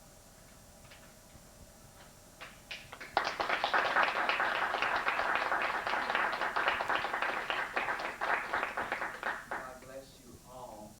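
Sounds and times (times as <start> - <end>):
audience applauding: 2.7 - 9.9.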